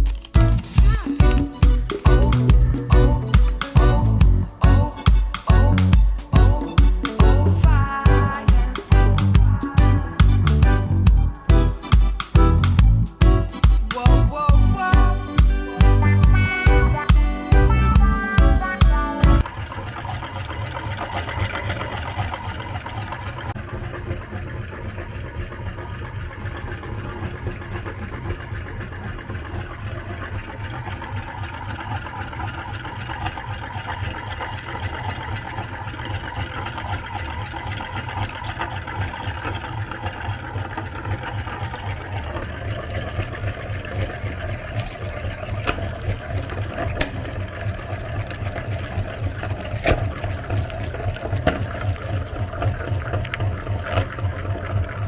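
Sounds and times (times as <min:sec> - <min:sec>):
sharp clicks: 0:00.0 - 0:03.8
electric meat grinder motor humming: 0:19.4 - 0:55.0.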